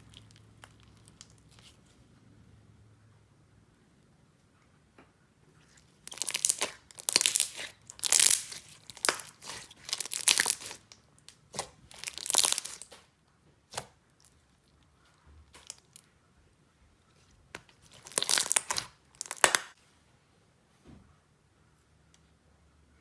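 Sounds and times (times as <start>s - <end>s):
slime crackling and crunching: 0.0s - 1.9s, 5.6s - 13.1s, 13.7s - 16.0s, 17.6s - 19.8s
slime snapping: 6.1s - 13.0s, 18.0s - 19.8s.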